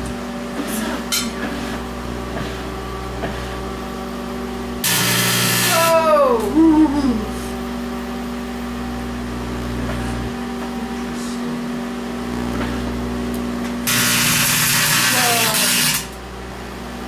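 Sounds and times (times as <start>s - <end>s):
microwave oven humming: 0.0s - 17.0s
staples arcing with hissing crackle: 4.8s - 5.8s, 8.4s - 16.3s.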